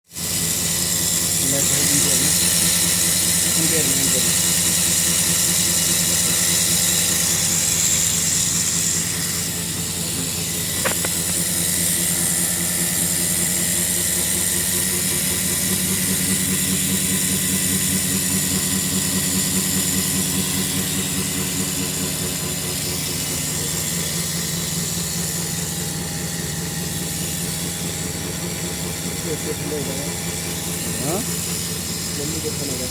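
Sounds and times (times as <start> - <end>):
compressor hum and hiss: 0.1 - 32.9
sharp click: 10.7 - 11.5.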